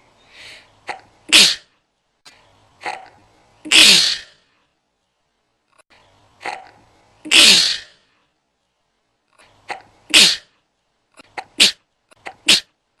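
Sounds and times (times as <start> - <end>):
person sneezing: 0.9 - 1.7, 3.7 - 4.4, 7.3 - 8.0, 9.7 - 10.5, 11.4 - 12.8.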